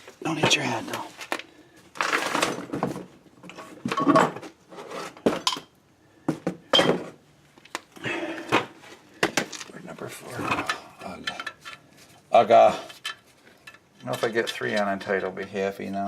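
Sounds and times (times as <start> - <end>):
metal tools clinking and scraping: 9.4 - 16.0.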